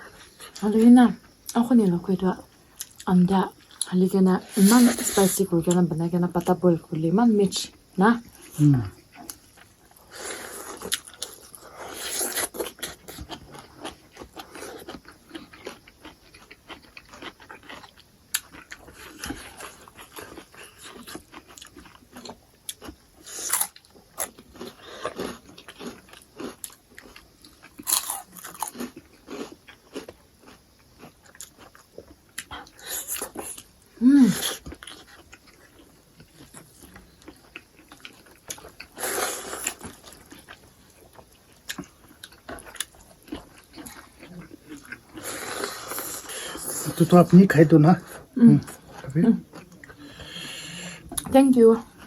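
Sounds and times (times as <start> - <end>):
person chewing crunchy food: 0.0 - 1.6, 2.4 - 5.8, 8.3 - 47.2, 48.0 - 52.0.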